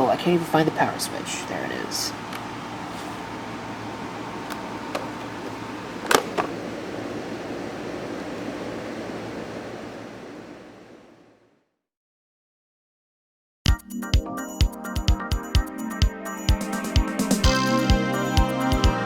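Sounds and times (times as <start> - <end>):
steady background hum: 0.0 - 11.5.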